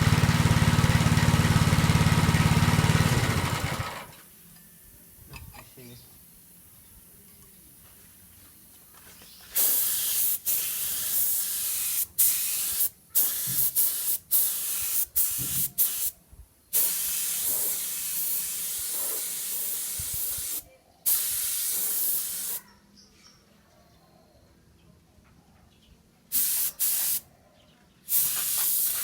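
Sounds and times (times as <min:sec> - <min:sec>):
spray paint hissing: 0:09.4 - 0:22.6, 0:26.3 - 0:27.2, 0:28.1 - 0:29.0.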